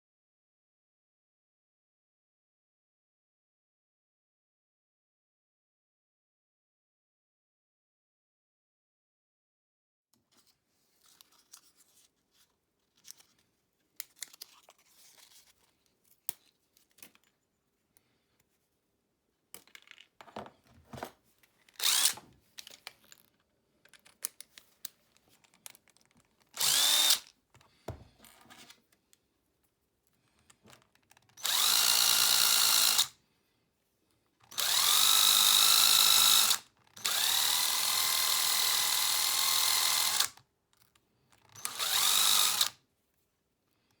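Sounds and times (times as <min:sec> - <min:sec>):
power tool whining: 0:21.8 - 0:22.3, 0:26.6 - 0:27.2, 0:31.4 - 0:33.1, 0:34.4 - 0:40.4, 0:41.5 - 0:42.8.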